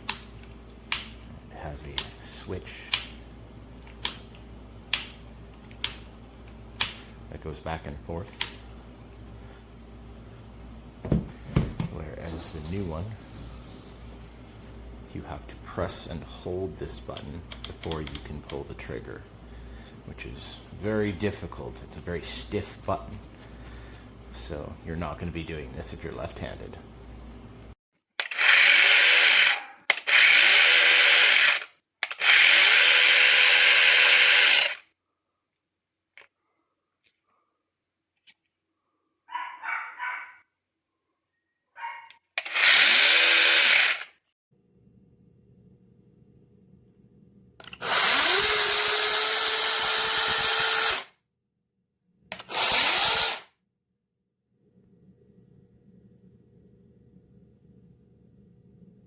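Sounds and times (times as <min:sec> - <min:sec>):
electric chainsaw motor running: 0:28.3 - 0:31.6, 0:32.2 - 0:34.8, 0:42.5 - 0:44.0, 0:47.6 - 0:51.1, 0:52.4 - 0:53.4.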